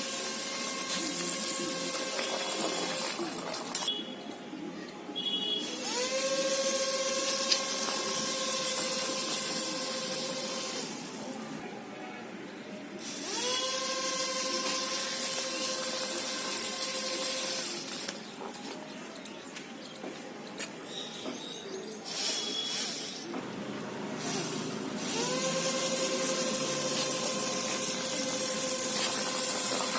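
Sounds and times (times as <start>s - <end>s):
small electric motors whining: 0.0s - 4.0s, 5.6s - 11.4s, 13.0s - 18.8s, 22.0s - 29.9s.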